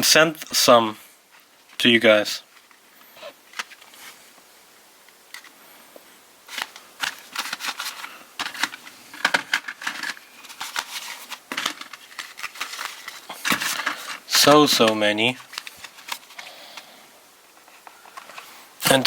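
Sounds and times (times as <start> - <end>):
packaging rustling: 6.4 - 18.6.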